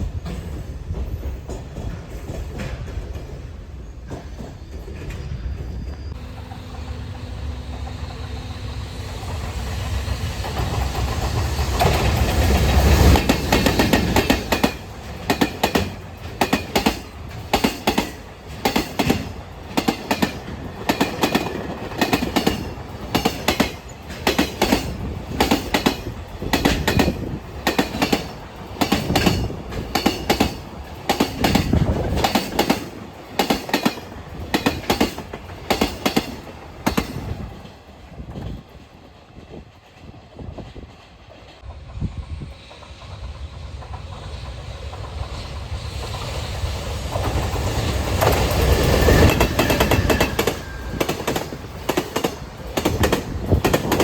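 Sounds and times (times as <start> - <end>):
locomotive rumble: 5.4 - 40.9
wagons clacking over rail joints: 10.4 - 41.8, 47.2 - 54.0.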